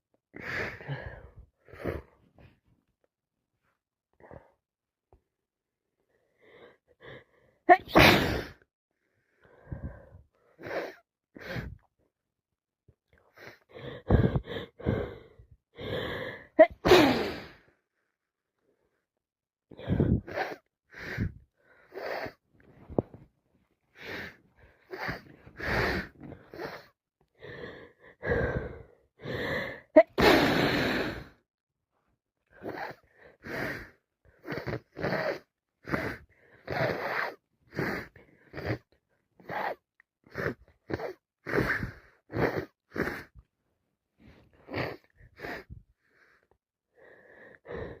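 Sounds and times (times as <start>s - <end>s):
woman sneezing: 7.7s - 8.6s, 16.6s - 17.4s
woman wheezy gasping breaths: 13.3s - 17.7s, 19.7s - 22.4s, 23.9s - 31.4s.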